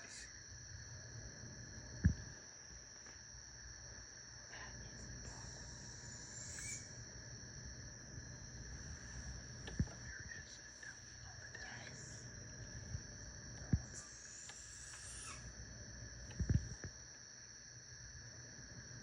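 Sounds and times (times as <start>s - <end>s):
crickets trilling: 0.0s - 19.0s.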